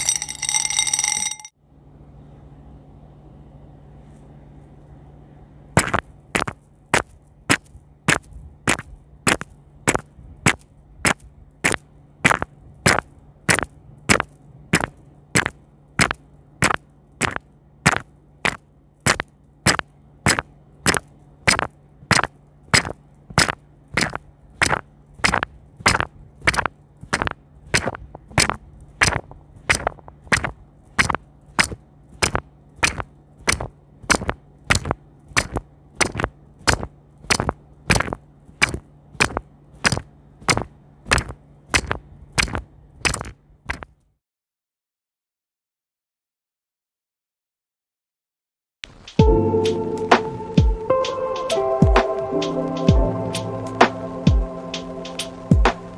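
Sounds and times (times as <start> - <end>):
faint low hum: 0.0 - 44.2.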